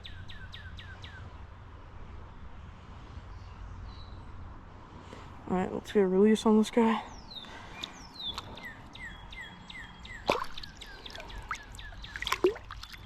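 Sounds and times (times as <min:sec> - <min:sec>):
songbird chirping: 0:00.0 - 0:01.7, 0:05.1 - 0:13.0
creek water: 0:06.7 - 0:13.0
sharp knock or splash: 0:10.3 - 0:10.6.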